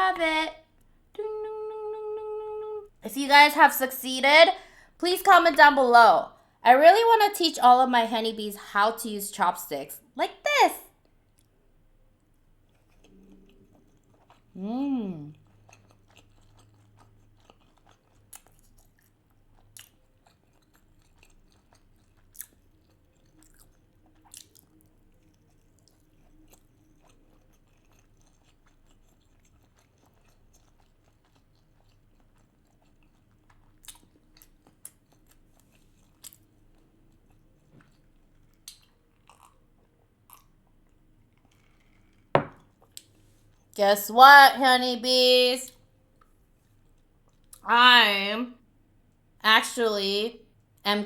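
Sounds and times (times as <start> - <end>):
person chewing: 12.5 - 43.8, 46.1 - 47.7
soft mouth clicks and smacks: 15.2 - 39.6, 41.3 - 43.8.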